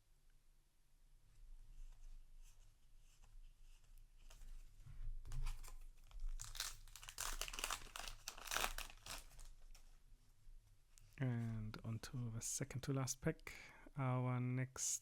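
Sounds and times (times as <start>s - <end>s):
foil wrapper crinkling and tearing: 5.6s - 9.8s.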